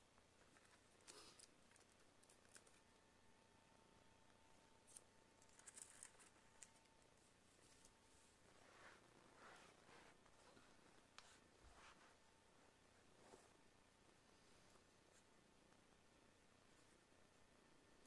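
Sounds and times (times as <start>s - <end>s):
faint steady tone: 0.0s - 18.0s
small parts clicking and rustling: 4.9s - 7.0s.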